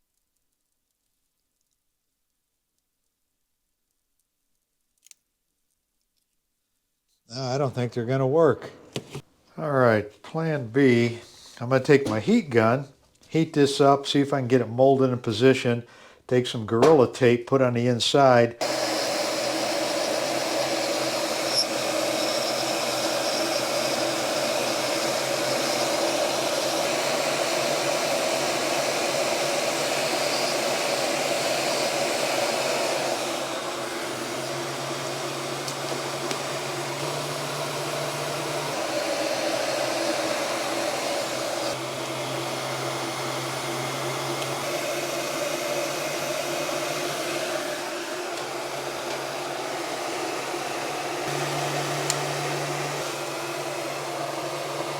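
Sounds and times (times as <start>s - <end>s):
heat gun blowing: 18.6s - 54.9s.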